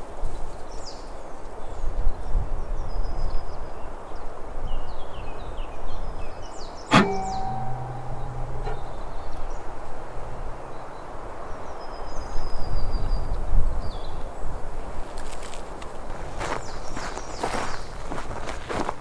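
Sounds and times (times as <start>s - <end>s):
steady low rumbling: 6.9s - 11.1s.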